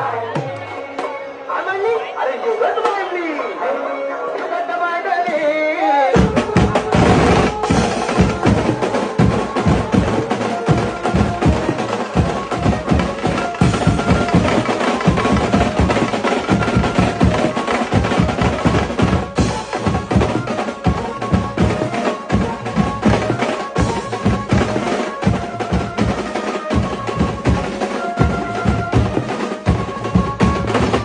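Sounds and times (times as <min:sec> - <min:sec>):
person singing: 0:03.4 - 0:24.4
fast dense drumming music: 0:06.2 - 0:31.0.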